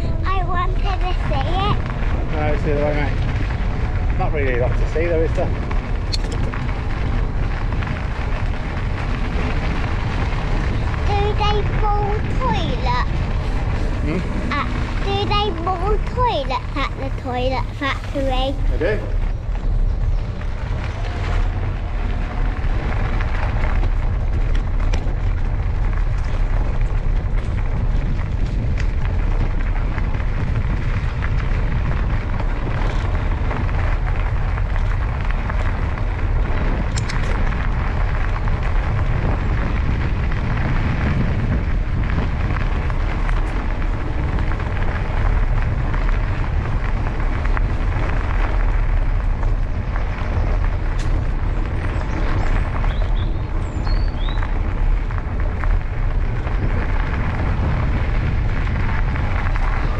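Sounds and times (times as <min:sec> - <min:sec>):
wind buffeting microphone: 0:00.0 - 0:59.9.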